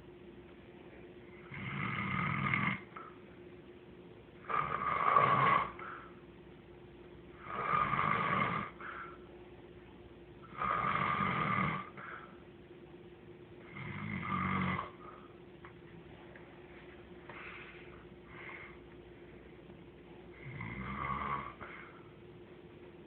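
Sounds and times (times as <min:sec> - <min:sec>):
loud snores: 0:01.4 - 0:02.9, 0:04.4 - 0:05.9, 0:07.4 - 0:08.9, 0:10.5 - 0:12.0, 0:13.6 - 0:15.0, 0:20.4 - 0:21.7.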